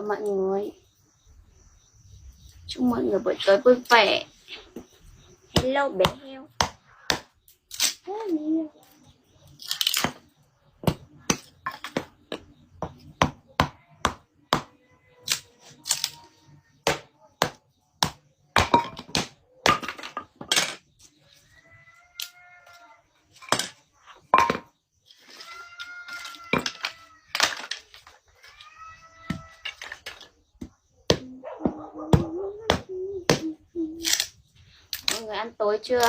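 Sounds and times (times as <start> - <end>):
axe chopping wood: 5.6 - 7.3, 16.9 - 20.0.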